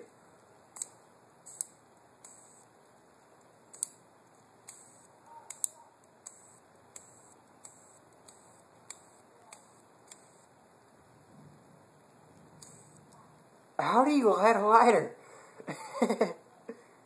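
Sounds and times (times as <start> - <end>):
lighter flint wheel clicks: 0.8 - 2.6, 3.7 - 4.0, 4.6 - 10.4.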